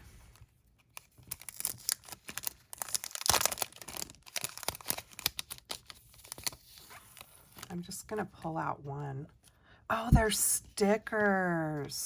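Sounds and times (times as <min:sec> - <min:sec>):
packaging crinkling and tearing: 0:00.8 - 0:07.7.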